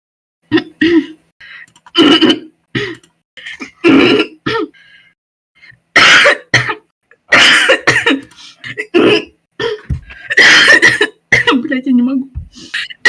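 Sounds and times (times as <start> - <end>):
woman coughing harshly: 0.5 - 1.2, 2.0 - 4.8, 6.0 - 11.8, 12.5 - 13.0
woman clearing her throat: 3.6 - 4.7.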